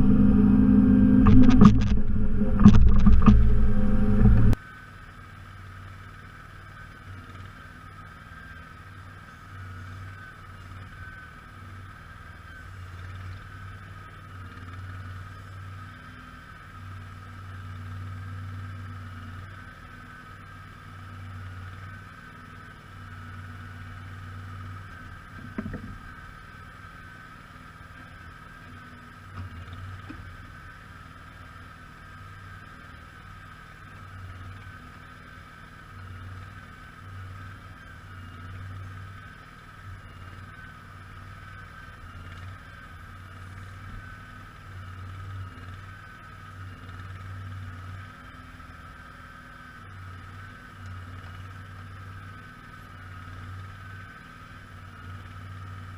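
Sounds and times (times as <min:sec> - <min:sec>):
garden tractor engine rumbling: 0:00.0 - 0:04.6.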